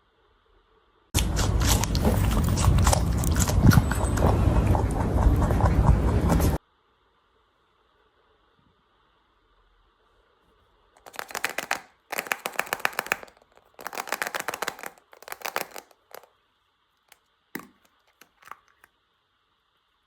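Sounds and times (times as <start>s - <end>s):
clicks and taps: 11.0s - 16.3s, 17.6s - 18.9s
packaging crackling: 11.0s - 16.3s.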